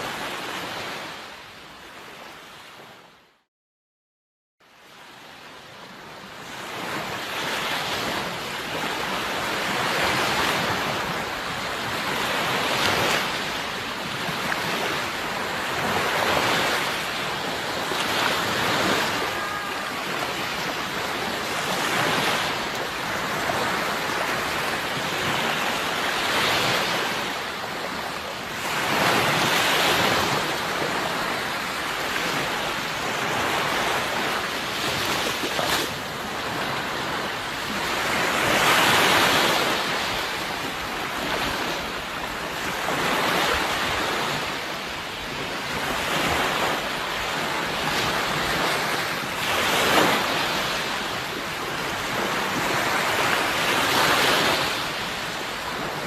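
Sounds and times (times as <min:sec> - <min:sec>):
sea waves breaking on shore: 0:00.0 - 0:03.3, 0:04.6 - 0:56.0
wind: 0:00.0 - 0:03.5, 0:04.6 - 0:56.0.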